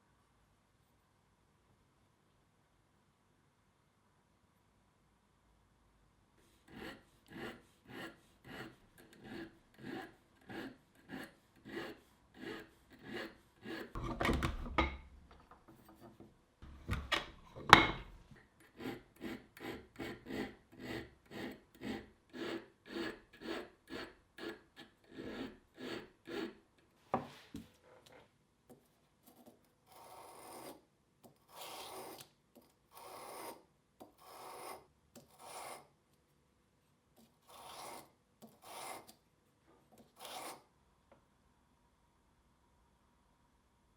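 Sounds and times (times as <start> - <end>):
hand file scraping steel: 6.5 - 14.3, 15.7 - 26.6, 29.3 - 30.8, 31.4 - 32.3, 32.9 - 35.9, 37.2 - 39.2, 40.0 - 40.7.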